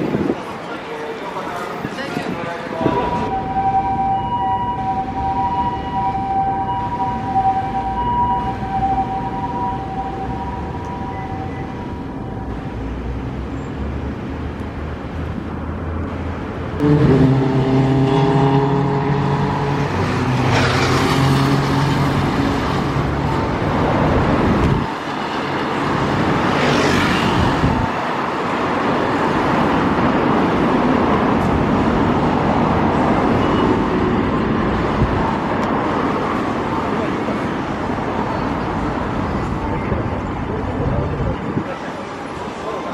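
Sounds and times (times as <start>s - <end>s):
vehicles passing with whoosh: 0.0s - 42.9s
vehicle engine humming: 3.2s - 26.5s.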